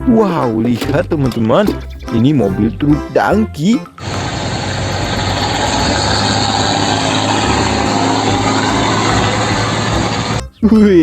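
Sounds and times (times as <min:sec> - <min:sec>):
truck engine running: 0:04.0 - 0:10.4.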